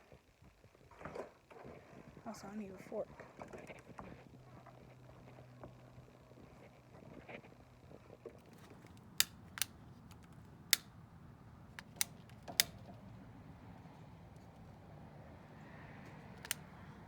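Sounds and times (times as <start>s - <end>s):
lighter clicking: 8.6s - 11.1s, 11.8s - 13.1s, 16.2s - 17.0s.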